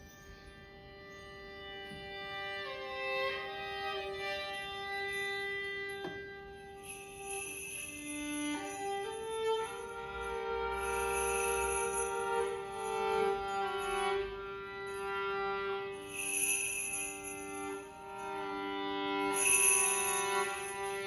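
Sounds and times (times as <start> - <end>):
violin playing slow notes: 0.0 - 21.0
bell-like shimmer of high tones: 3.9 - 21.0
held ringing tone: 4.2 - 15.1, 15.9 - 18.5, 19.2 - 21.0.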